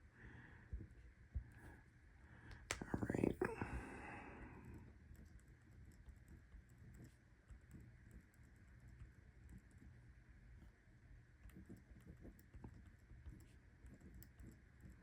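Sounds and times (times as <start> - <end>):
low room hiss: 0.0 - 15.0
pen tapping and scratching paper: 5.1 - 10.0, 11.4 - 15.0.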